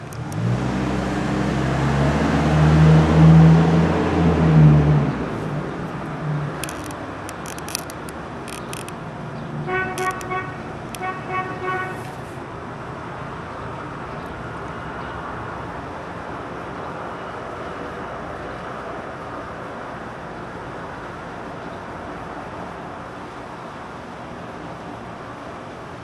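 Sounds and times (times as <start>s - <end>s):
vehicle horn honking: 9.6s - 12.1s.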